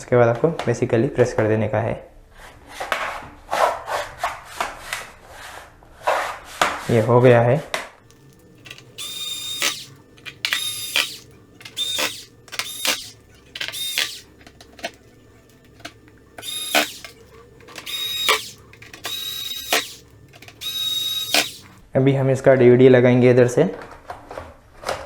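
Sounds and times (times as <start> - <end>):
electric screwdriver whining: 8.1 - 21.8.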